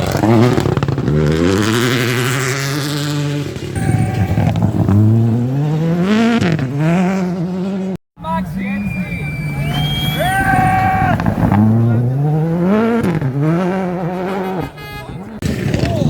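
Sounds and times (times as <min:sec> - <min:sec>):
rally car engine revving: 0:00.0 - 0:08.0, 0:09.3 - 0:16.0.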